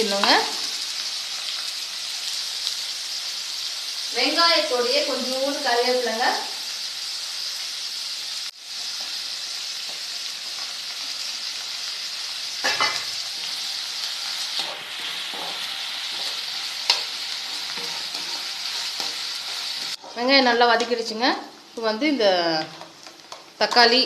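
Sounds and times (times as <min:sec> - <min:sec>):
onions sizzling in hot oil: 0:00.0 - 0:24.0
spatula scraping a pan: 0:12.6 - 0:20.9.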